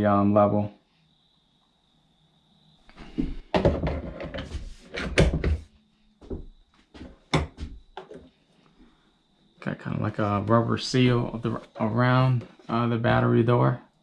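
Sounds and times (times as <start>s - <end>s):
plastic knocks and scrapes: 3.1s - 5.7s, 6.3s - 8.3s.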